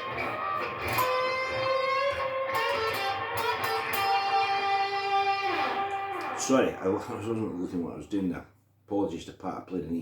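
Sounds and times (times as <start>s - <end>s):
electric guitar lick: 0.0s - 7.5s.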